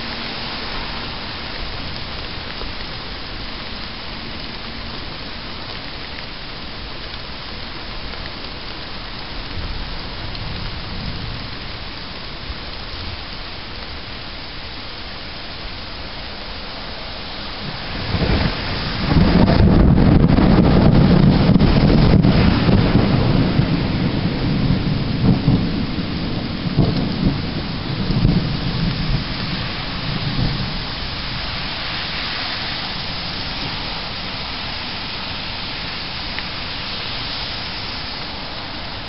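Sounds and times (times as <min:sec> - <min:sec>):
heavy rain falling: 0:00.0 - 0:39.0
low rumble of thunder: 0:08.7 - 0:14.8, 0:15.4 - 0:39.0
wind buffeting microphone: 0:16.3 - 0:39.0.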